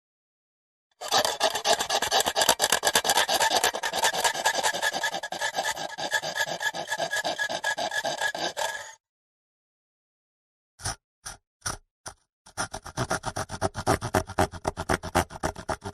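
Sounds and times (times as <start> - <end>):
handsaw cutting wood: 1.0 - 9.0, 12.5 - 15.9.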